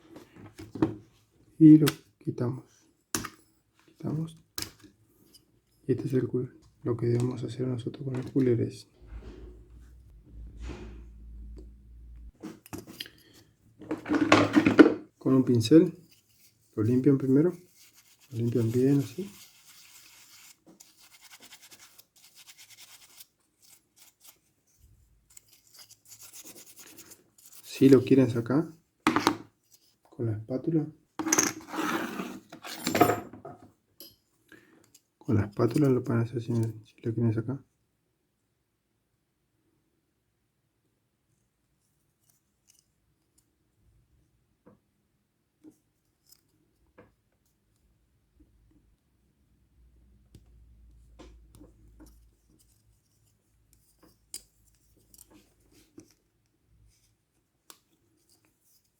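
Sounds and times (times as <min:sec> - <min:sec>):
brush bristles scratching: 0:16.1 - 0:27.9.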